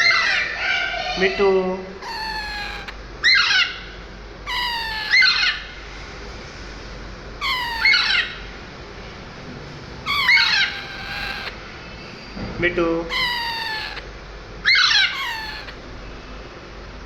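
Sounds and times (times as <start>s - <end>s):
parrot talking: 1.1s - 3.0s, 4.5s - 5.5s, 7.4s - 8.4s, 10.0s - 11.6s, 13.1s - 14.1s, 14.8s - 15.8s.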